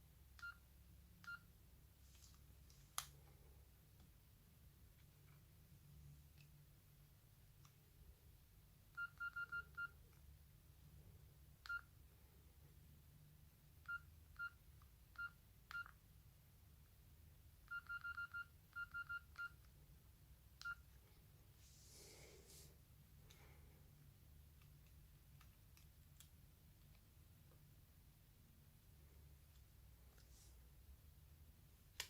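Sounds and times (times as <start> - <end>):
phone key beeps: 9.0 - 10.0, 15.2 - 16.0, 17.7 - 19.7, 20.6 - 20.9.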